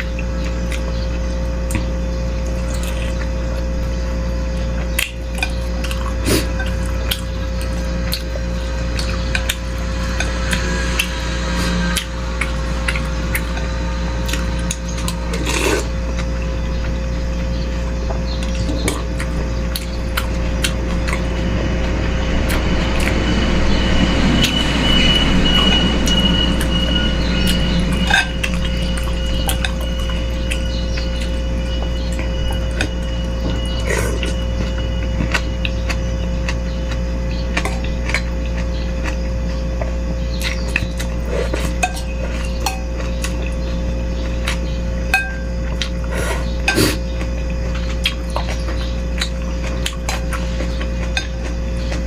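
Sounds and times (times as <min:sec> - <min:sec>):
steady low hum: 0:00.0 - 0:52.0
chewing: 0:01.6 - 0:17.0, 0:17.6 - 0:23.2, 0:25.6 - 0:44.8, 0:45.7 - 0:52.0
slurping broth: 0:15.3 - 0:15.9
spoon clinking against bowl: 0:45.2 - 0:45.5.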